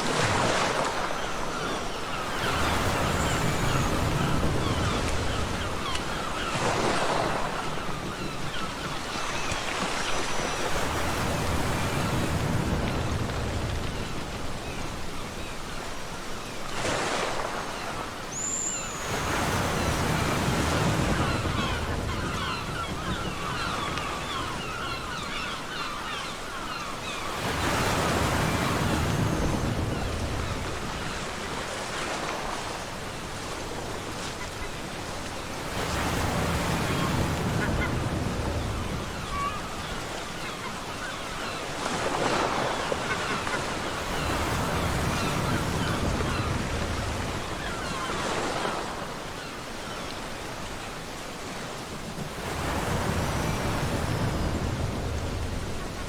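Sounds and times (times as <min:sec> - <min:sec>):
ocean surf breaking: 0:26.6 - 0:49.5, 0:50.5 - 0:56.0.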